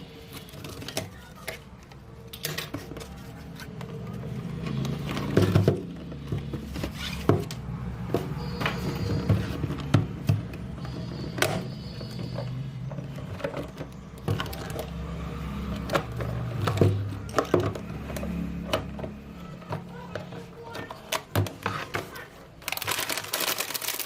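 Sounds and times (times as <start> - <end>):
plastic toy pieces clicking: 22.6 - 24.0.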